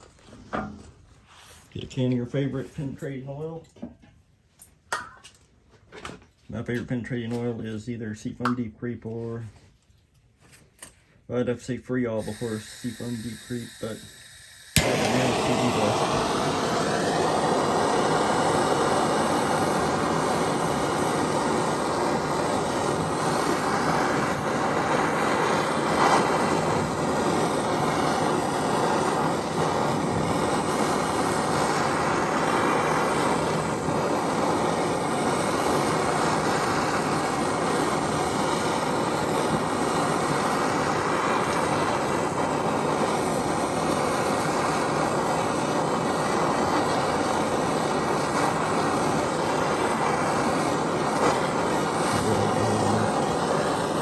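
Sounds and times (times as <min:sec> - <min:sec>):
gas torch flame roaring hiss: 0:12.1 - 0:54.0.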